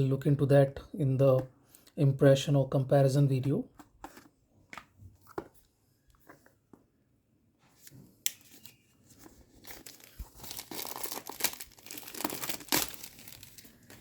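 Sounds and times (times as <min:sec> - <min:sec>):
paper and plastic crinkling: 0:08.4 - 0:14.0.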